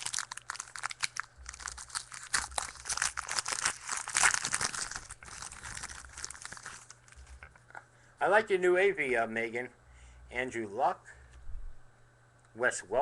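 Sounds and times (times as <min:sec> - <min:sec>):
foil wrapper tearing and crinkling: 0:00.0 - 0:07.5.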